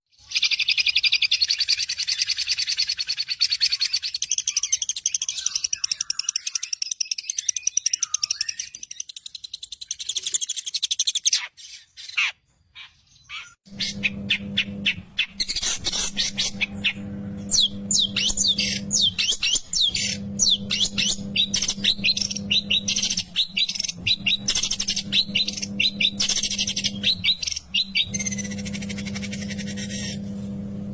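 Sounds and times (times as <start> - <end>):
bird singing rapid chatter: 0.1 - 30.3
steady low hum: 13.7 - 30.9.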